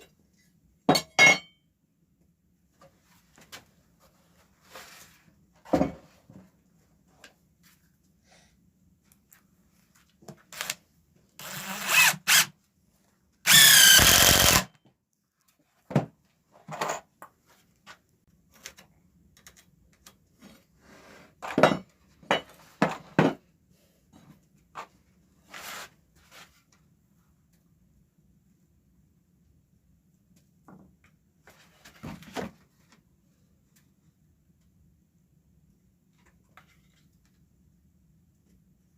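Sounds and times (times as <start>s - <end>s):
cordless drill driving screws: 11.4s - 12.5s, 13.5s - 14.7s.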